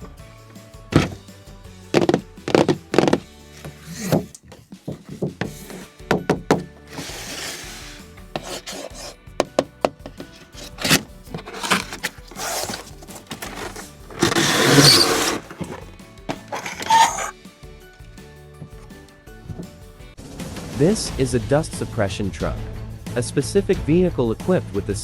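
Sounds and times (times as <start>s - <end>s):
background music: 0.0s - 25.0s
rasping rubbing noises: 1.0s - 1.2s, 2.0s - 4.3s, 6.9s - 9.2s, 10.2s - 17.3s.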